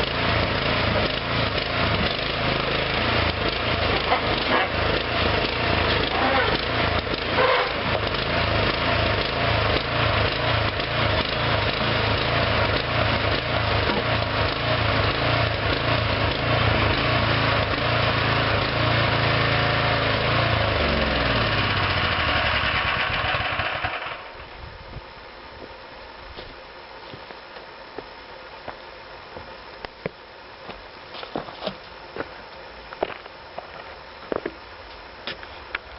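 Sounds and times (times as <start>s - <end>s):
small engine throbbing: 0.0s - 24.7s.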